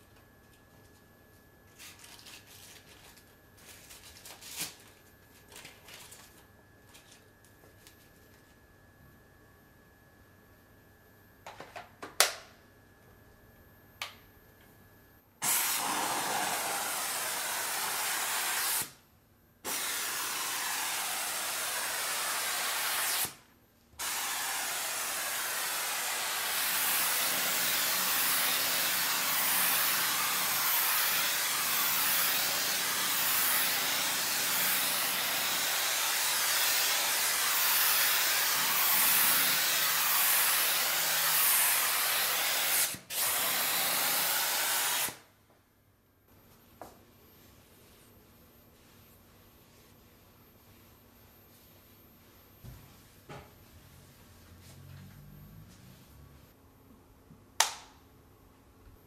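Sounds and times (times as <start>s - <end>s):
steam cleaner hissing: 15.4s - 19.0s, 19.6s - 23.4s, 24.0s - 45.2s.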